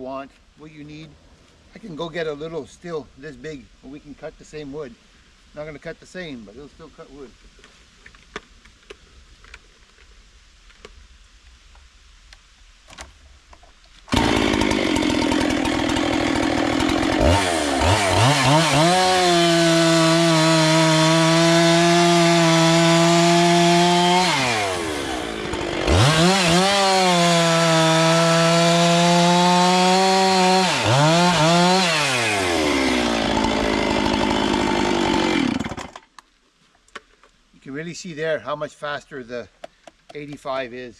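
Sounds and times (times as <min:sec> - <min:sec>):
chainsaw running and cutting: 0:14.1 - 0:36.1.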